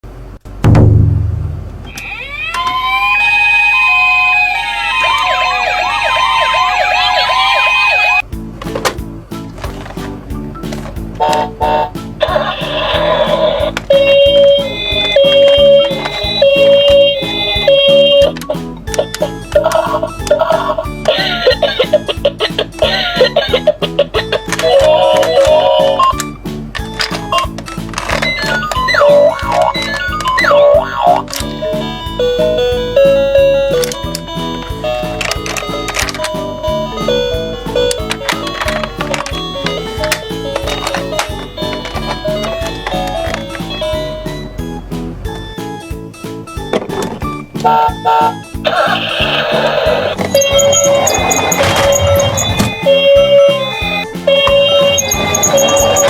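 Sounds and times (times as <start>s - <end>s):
plucked bass line: 0.6s - 1.9s
ambulance sirens wailing: 1.9s - 8.2s, 11.1s - 46.4s, 47.2s - 56.0s.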